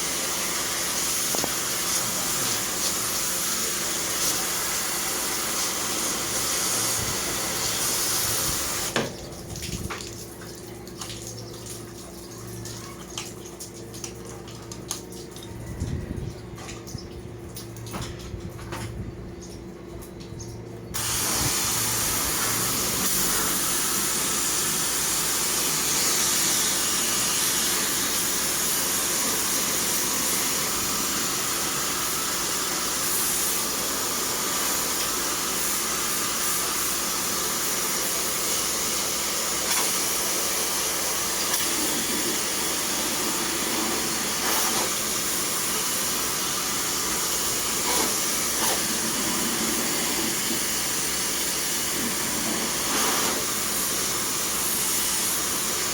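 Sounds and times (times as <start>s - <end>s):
high-pressure water spray hissing: 0.0s - 9.1s, 21.0s - 55.9s.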